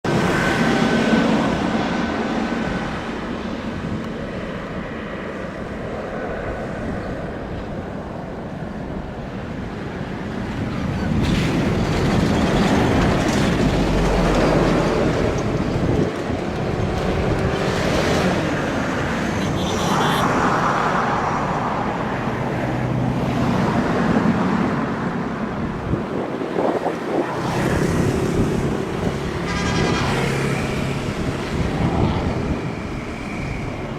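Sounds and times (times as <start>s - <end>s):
airliner engines roaring: 0.0s - 33.9s
gusting wind: 0.0s - 33.9s.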